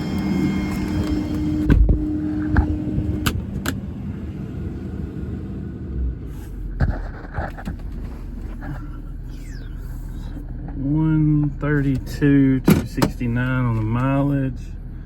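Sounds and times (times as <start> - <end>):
diesel truck engine running: 0.0 - 15.0
low engine rumble: 0.0 - 15.0
loud thump: 1.6 - 3.4.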